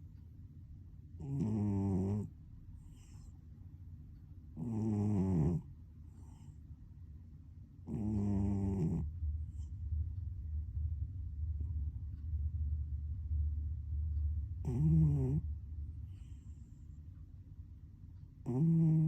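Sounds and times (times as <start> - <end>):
cat snoring: 1.2 - 3.4, 4.6 - 6.6, 7.8 - 9.7, 14.6 - 15.5, 16.1 - 16.9, 18.4 - 19.0.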